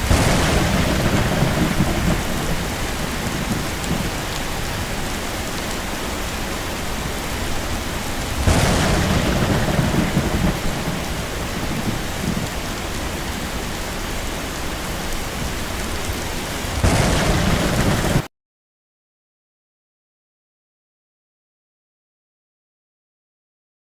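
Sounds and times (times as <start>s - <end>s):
heavy rain: 0.0s - 18.3s
thunder rumbling: 0.0s - 18.3s.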